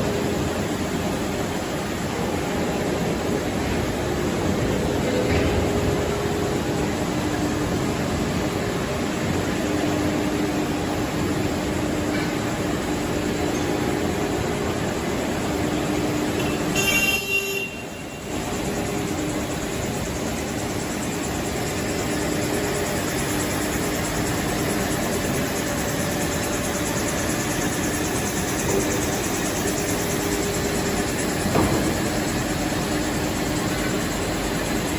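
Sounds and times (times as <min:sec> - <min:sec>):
high metallic ringing: 0:16.3 - 0:18.4.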